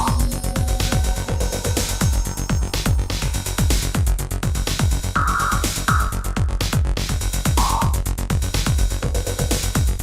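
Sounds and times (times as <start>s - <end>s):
kick drum: 0.0s - 10.0s
electronic dance music: 4.6s - 8.1s.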